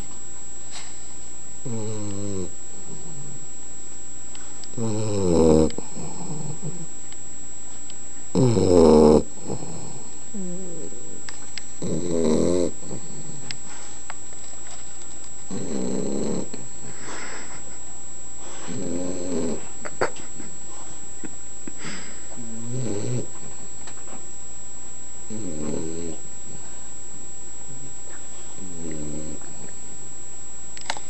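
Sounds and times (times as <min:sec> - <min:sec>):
puppy snoring: 0:00.7 - 0:03.4, 0:04.4 - 0:07.0, 0:08.3 - 0:14.0, 0:15.5 - 0:17.7, 0:18.4 - 0:20.8, 0:21.8 - 0:23.6, 0:25.2 - 0:26.9, 0:27.8 - 0:29.8
sharp click: 0:30.8 - 0:31.0.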